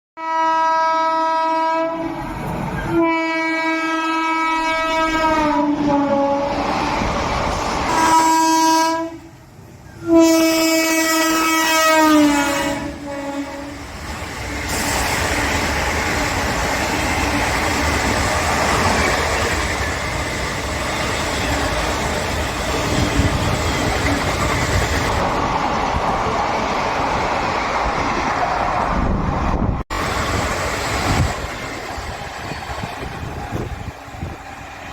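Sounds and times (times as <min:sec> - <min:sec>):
locomotive horn blasts: 0:00.2 - 0:02.2, 0:02.9 - 0:06.6, 0:07.9 - 0:09.3, 0:10.0 - 0:13.8
train coaches rushing by: 0:02.0 - 0:34.9.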